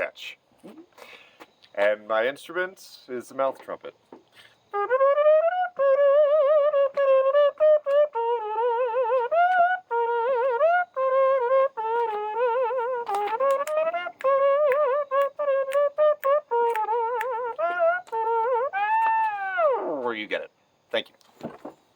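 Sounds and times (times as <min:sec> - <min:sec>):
person imitating trumpet: 0:11.4 - 0:20.1.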